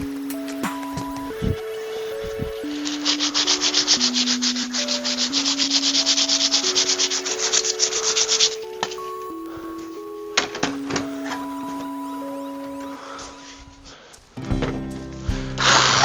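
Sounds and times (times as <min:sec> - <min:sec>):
sandpaper rubbing on wood: 0:02.6 - 0:08.7.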